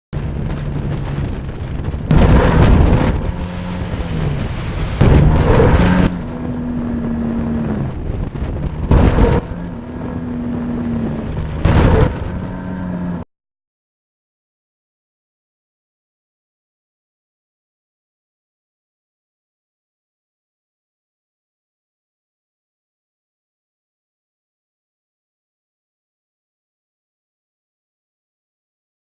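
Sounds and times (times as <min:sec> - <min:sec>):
loud rushing surges: 0:00.2 - 0:13.2.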